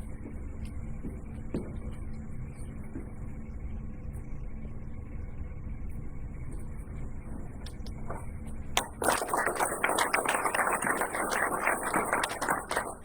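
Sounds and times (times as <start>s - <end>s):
low steady hall hum: 0.0s - 13.0s
audience applauding: 8.8s - 13.0s.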